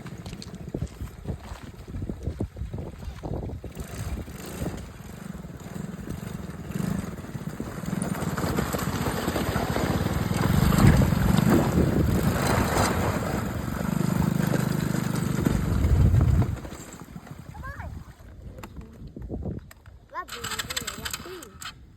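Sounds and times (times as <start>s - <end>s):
atv engine revving: 3.3s - 17.9s, 20.2s - 21.8s.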